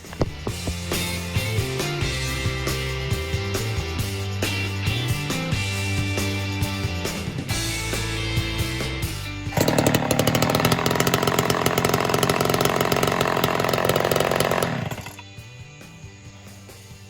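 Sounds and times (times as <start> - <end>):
background music: 0.0 - 11.1, 11.8 - 17.0
chainsaw running at high speed: 9.5 - 15.2.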